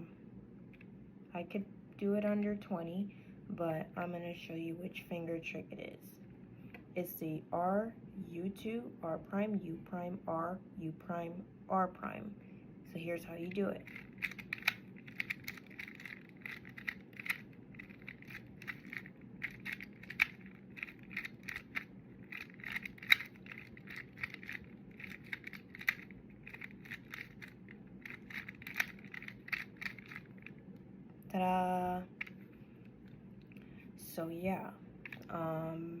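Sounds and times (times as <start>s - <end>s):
puzzle cube clicking and rattling: 13.7s - 30.6s.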